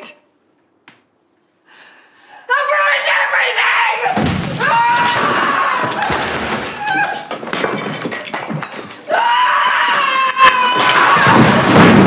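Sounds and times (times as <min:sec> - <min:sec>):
knocks and thumps: 0:04.2 - 0:09.0, 0:10.8 - 0:12.0.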